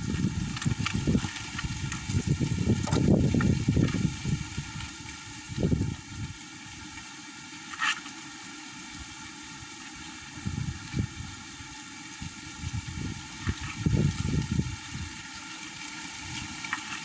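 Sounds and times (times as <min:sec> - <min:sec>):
wind buffeting microphone: 0:00.0 - 0:06.4, 0:10.4 - 0:11.4, 0:12.2 - 0:15.2.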